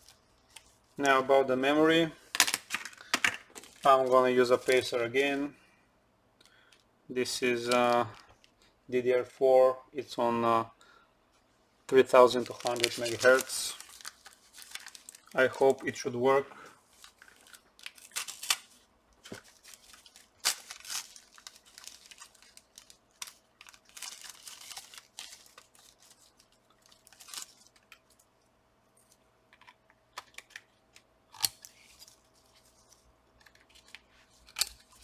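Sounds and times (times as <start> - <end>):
plastic packaging crinkling: 2.1 - 5.0, 11.9 - 16.1, 16.8 - 28.2.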